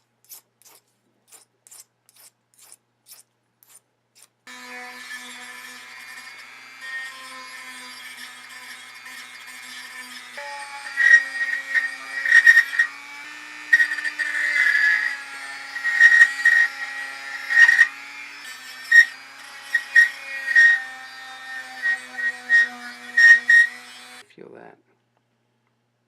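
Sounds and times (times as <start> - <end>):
file scraping knife blade: 0.0 - 13.0, 13.6 - 24.2.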